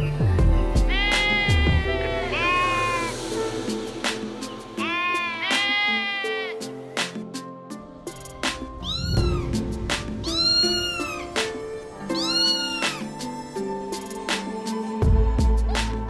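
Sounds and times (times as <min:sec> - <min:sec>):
background music: 0:00.0 - 0:16.0
cat meowing: 0:00.9 - 0:03.1, 0:04.8 - 0:06.6, 0:08.8 - 0:09.5, 0:10.3 - 0:11.3, 0:12.2 - 0:12.8.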